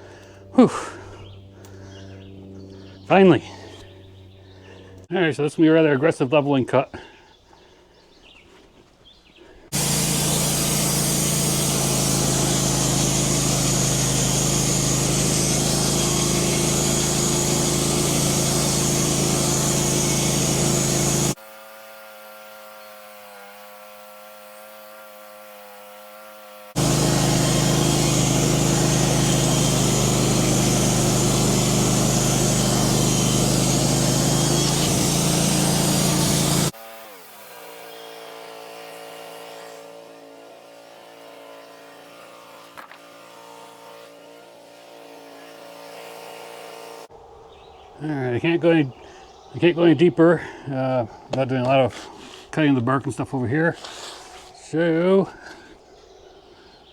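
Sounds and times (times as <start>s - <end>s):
chainsaw cutting log: 9.7s - 47.1s, 51.3s - 54.6s.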